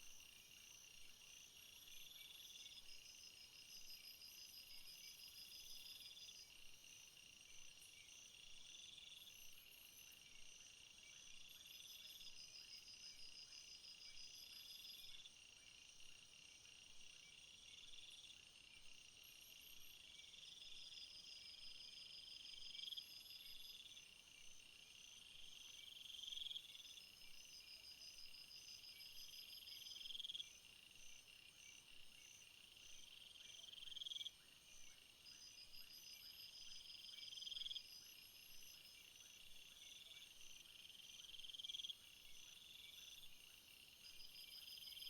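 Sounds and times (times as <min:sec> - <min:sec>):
buzzy insect call: 0:25.1 - 0:45.0.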